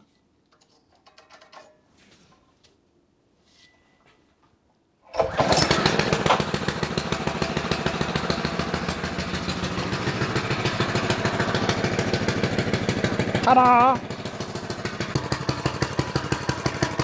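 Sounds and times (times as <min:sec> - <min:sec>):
small engine starting and running: 0:05.1 - 0:17.0.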